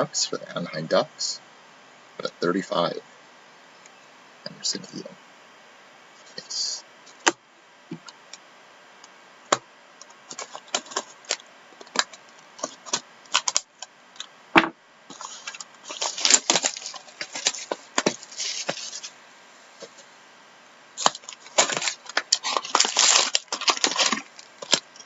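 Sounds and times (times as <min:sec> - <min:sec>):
card packs crinkling: 0:10.0 - 0:14.3, 0:15.1 - 0:19.2, 0:21.0 - 0:25.0
cards clicking and snapping: 0:10.3 - 0:13.7.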